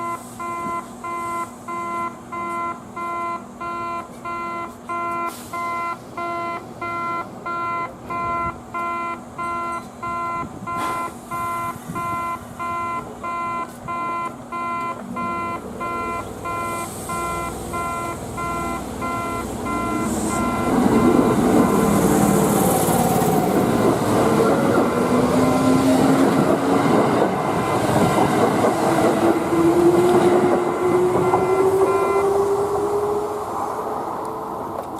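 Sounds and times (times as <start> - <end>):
level crossing warning bell chiming: 0.0 - 32.4
electric train passing: 15.1 - 34.9
train motor whine rising in pitch: 15.2 - 34.6.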